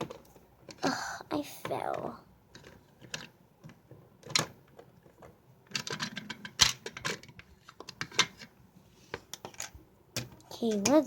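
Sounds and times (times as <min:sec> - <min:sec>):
plastic toy pieces clicking: 0:01.7 - 0:08.5, 0:09.3 - 0:11.0.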